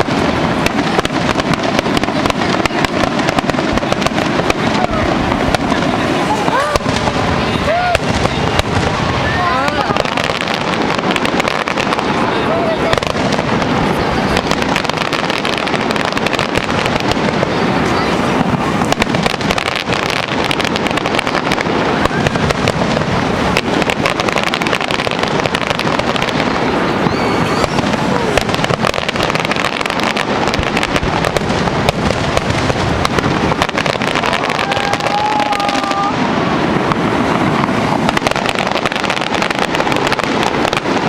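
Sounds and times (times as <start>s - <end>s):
fireworks bursting and crackling: 0.0s - 41.0s.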